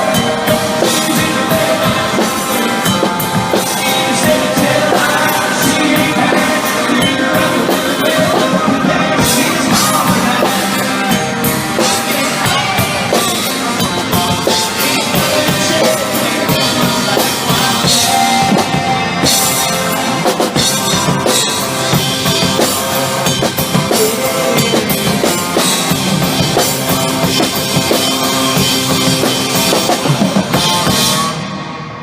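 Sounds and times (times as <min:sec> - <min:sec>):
live rock band playing: 0:00.0 - 0:32.0.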